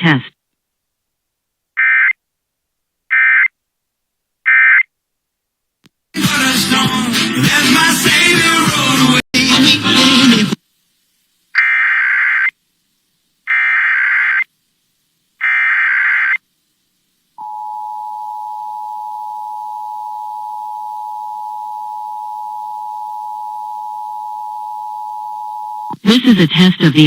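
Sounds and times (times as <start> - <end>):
digital data bursts: 11.6 - 12.5, 13.5 - 14.5
two-tone attention signal: 17.4 - 26.0.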